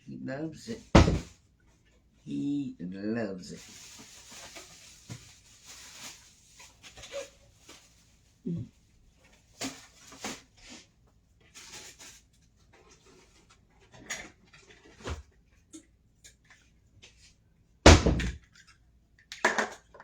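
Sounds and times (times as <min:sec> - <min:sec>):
kitchen handling clicks and rustles: 0:00.9 - 0:01.4, 0:11.4 - 0:17.2
loud heavy thump: 0:01.0 - 0:01.3, 0:17.9 - 0:18.4.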